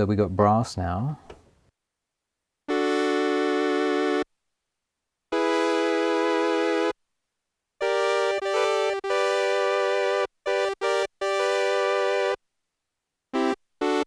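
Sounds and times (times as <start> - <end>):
keyboard brass notes: 2.7 - 4.2, 5.4 - 6.9, 7.8 - 12.4, 13.4 - 14.0.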